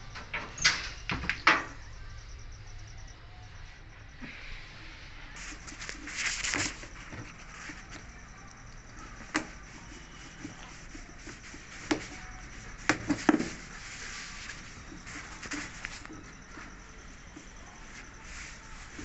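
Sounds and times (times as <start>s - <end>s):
rustling scrape: 5.4s - 7.9s.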